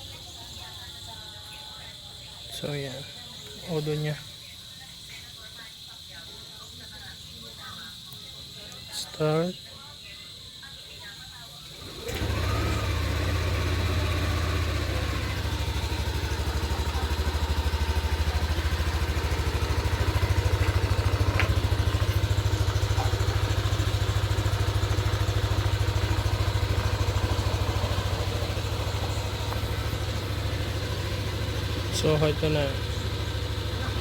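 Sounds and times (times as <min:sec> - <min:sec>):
scooter engine starting and idling: 0:11.6 - 0:34.0.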